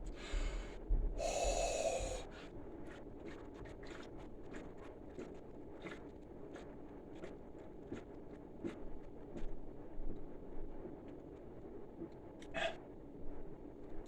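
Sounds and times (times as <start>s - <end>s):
sharp breath: 1.2s - 2.3s.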